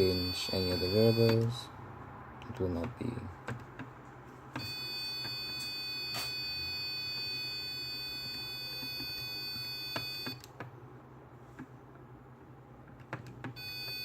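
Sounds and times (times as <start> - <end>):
buzzer alarm steady tone: 0.0 - 1.6, 4.6 - 10.4, 13.6 - 14.0.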